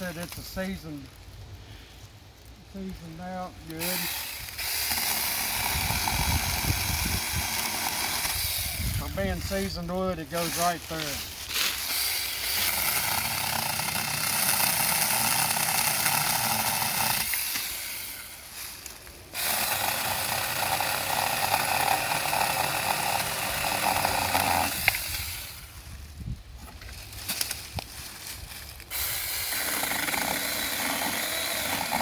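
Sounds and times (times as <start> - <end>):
electric chainsaw cutting wood: 3.6 - 9.2, 11.7 - 18.5, 19.3 - 25.8, 28.8 - 32.0.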